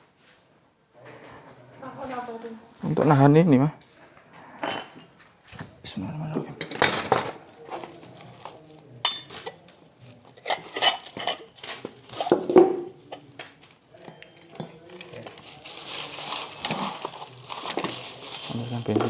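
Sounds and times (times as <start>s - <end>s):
metal tools clinking: 10.4s - 12.3s.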